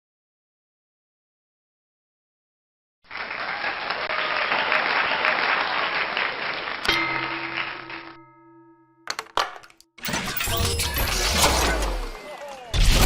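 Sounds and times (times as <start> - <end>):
applause: 3.0 - 8.2
ringing bell-like ding: 6.9 - 9.1.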